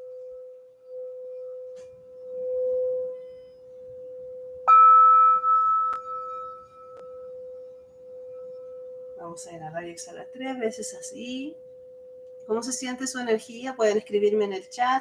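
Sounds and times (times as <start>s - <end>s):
singing bowl humming: 0.0s - 15.0s
crystal bowl struck ringing: 4.6s - 9.2s.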